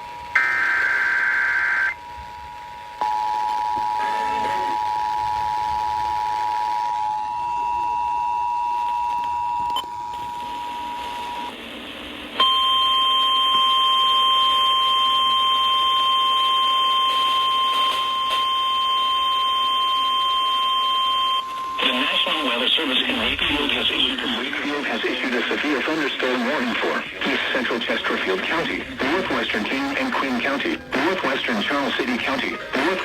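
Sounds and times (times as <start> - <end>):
steady warning alarm tone: 12.4 - 33.0.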